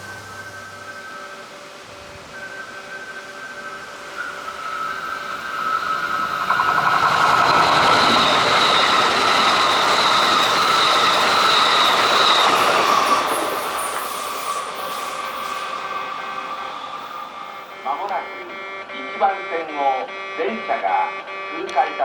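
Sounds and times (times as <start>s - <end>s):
higher tone: 0.0s - 6.6s, 15.5s - 22.0s
electric train rumbling past: 0.0s - 22.0s
steady high tone: 0.0s - 22.0s.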